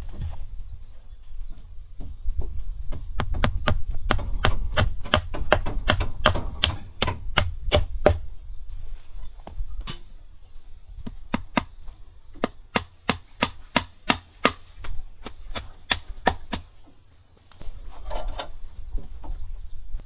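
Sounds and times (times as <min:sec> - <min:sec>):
sharp chopping strikes: 0:03.2 - 0:08.3, 0:11.1 - 0:11.8, 0:12.4 - 0:16.7.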